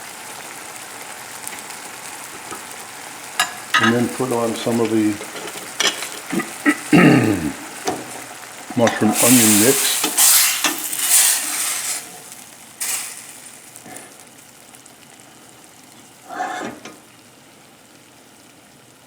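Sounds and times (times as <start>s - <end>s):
spoon scraping a pan: 3.4s - 6.9s, 7.8s - 14.1s, 16.3s - 17.0s.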